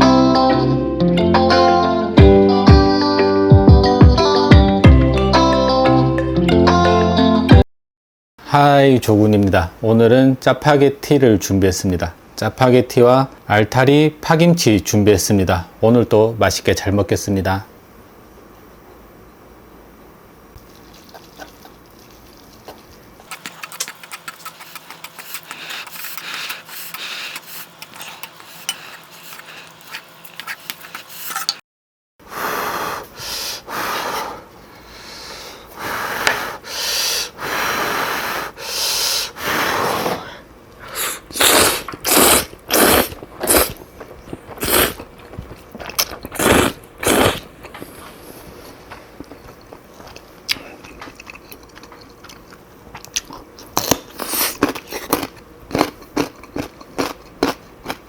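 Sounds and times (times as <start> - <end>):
slurping noodles: 20.6 - 31.5, 39.2 - 48.2.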